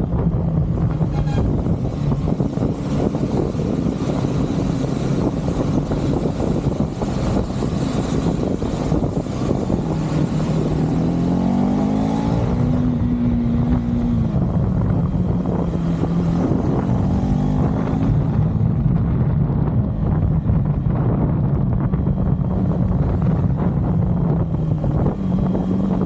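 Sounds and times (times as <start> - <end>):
motorcycle engine running: 0.0 - 26.0
wind rush on microphone: 0.0 - 26.0.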